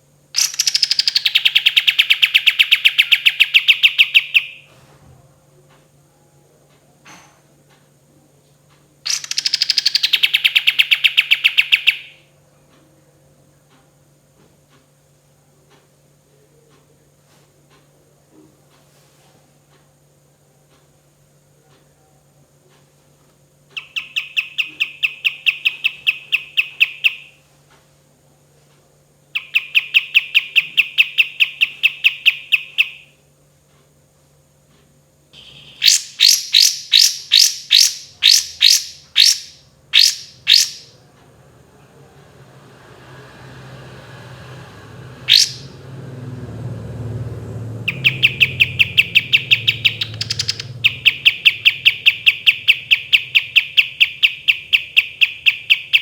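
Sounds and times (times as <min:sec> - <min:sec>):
bird singing rattling trills: 0:00.4 - 0:04.7, 0:09.1 - 0:12.2, 0:23.8 - 0:27.4, 0:29.3 - 0:33.1, 0:35.4 - 0:41.0, 0:45.2 - 0:45.8, 0:47.7 - 0:56.0.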